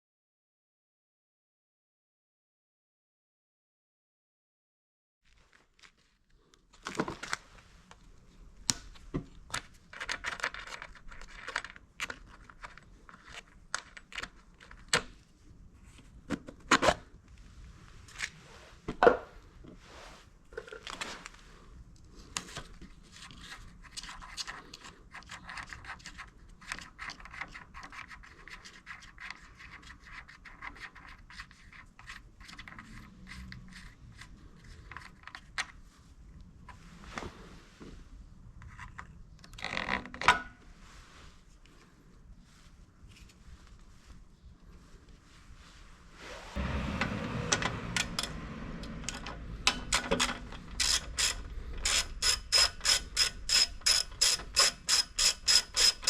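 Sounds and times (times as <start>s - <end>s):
objects scraping and rubbing: 30.9s - 35.4s, 40.8s - 53.4s
sharp clicks and knocks: 47.5s - 56.0s.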